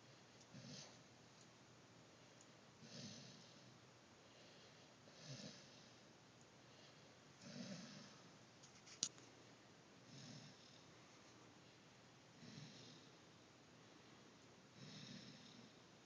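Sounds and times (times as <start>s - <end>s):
pet wheezing with snore-like rasp: 0.5s - 1.0s, 2.8s - 6.0s, 6.8s - 8.3s, 10.0s - 10.9s, 12.4s - 13.2s, 14.7s - 15.8s.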